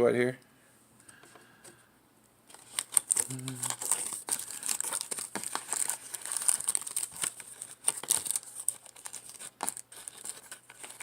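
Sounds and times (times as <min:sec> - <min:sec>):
wrapper crinkling and tearing: 0:02.5 - 0:11.0.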